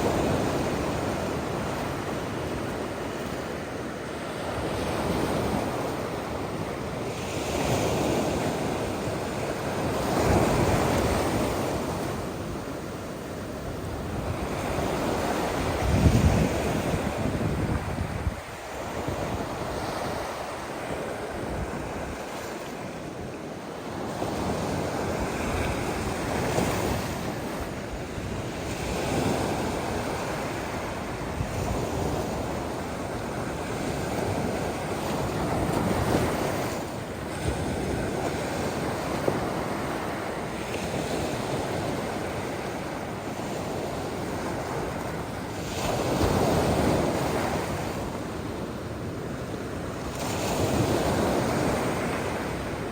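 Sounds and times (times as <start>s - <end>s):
waves breaking on beach: 0.0s - 52.9s
wind buffeting microphone: 7.4s - 23.3s.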